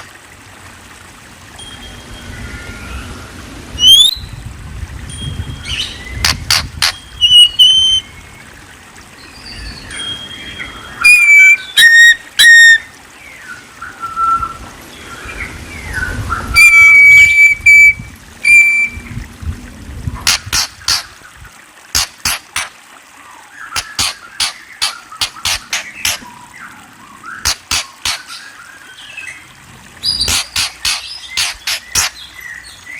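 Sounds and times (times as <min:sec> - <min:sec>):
songbird whistling and clicking: 0:03.8 - 0:04.2, 0:06.2 - 0:08.0, 0:11.0 - 0:12.9, 0:16.6 - 0:19.0, 0:20.3 - 0:21.1, 0:22.0 - 0:22.7, 0:23.7 - 0:26.3, 0:27.4 - 0:28.5, 0:30.1 - 0:32.3.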